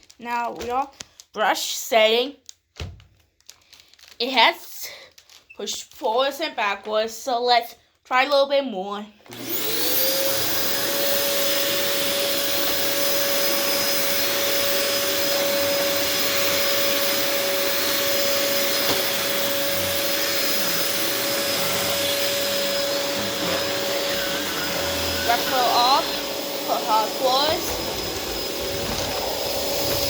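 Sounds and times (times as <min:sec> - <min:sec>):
vacuum cleaner running on carpet: 0:09.3 - 0:30.0.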